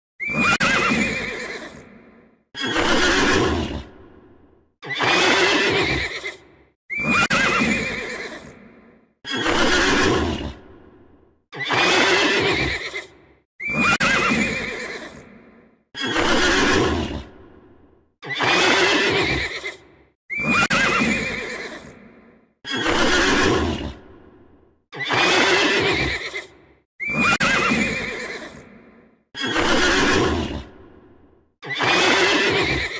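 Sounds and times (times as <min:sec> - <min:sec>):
horse whinnying: 0:00.2 - 0:02.0, 0:02.6 - 0:03.8, 0:04.8 - 0:08.6, 0:09.3 - 0:10.6, 0:11.6 - 0:15.4, 0:16.0 - 0:17.2, 0:18.2 - 0:22.0, 0:22.7 - 0:23.9, 0:25.0 - 0:28.8, 0:29.4 - 0:30.6, 0:31.6 - 0:32.9.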